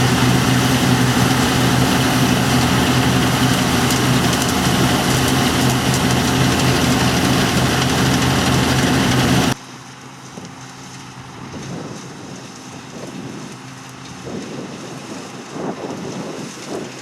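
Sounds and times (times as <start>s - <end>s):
even rushing noise: 0.0s - 9.6s
diesel engine running loudly: 0.0s - 15.5s.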